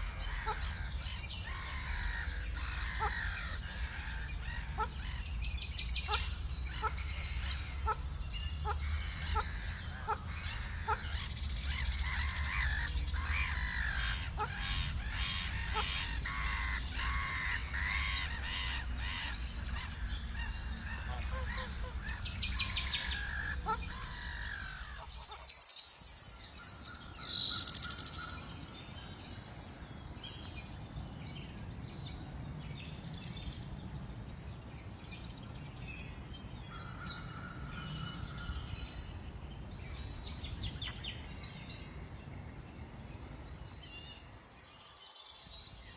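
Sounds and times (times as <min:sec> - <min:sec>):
songbirds chirping and trilling: 0:26.1 - 0:45.6
low rumbling background: 0:26.5 - 0:44.3
loud falling whistled bird call: 0:26.6 - 0:44.4.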